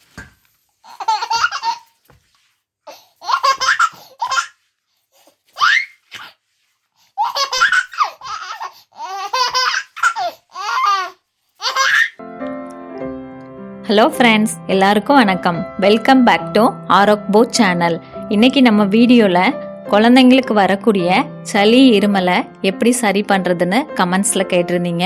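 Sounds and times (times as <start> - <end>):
baby laughing: 0.8 - 2.0, 2.9 - 4.6, 5.6 - 6.4, 7.2 - 12.2.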